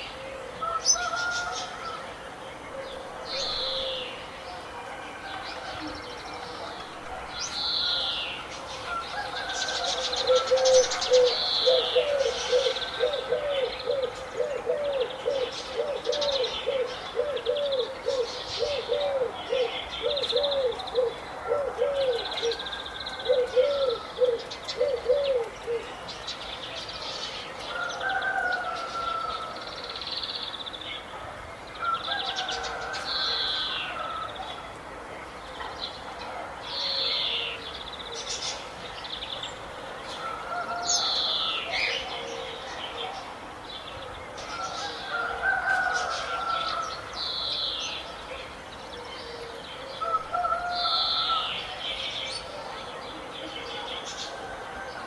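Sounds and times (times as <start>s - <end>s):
birds chirping and singing: 0.0s - 4.7s, 5.4s - 31.1s.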